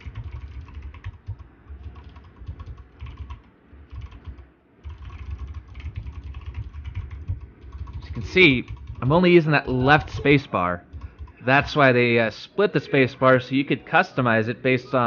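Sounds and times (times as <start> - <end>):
fast typing on clicky keyboard: 0.0 - 9.2, 10.9 - 11.4.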